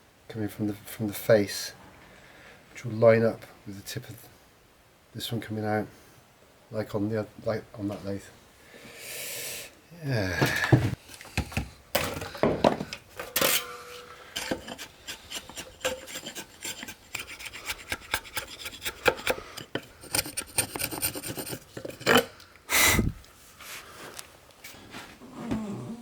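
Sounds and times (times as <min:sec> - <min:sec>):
hand tools scraping wood: 0:13.6 - 0:22.3.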